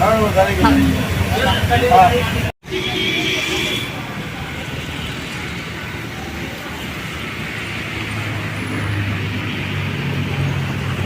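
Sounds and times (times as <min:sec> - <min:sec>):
road traffic noise: 0:00.0 - 0:11.0.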